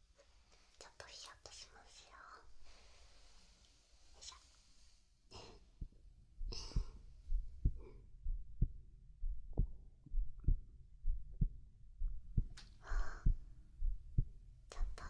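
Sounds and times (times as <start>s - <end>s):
soft breaths: 0.1s - 8.8s, 12.0s - 15.0s
heartbeat thumps: 5.4s - 15.0s.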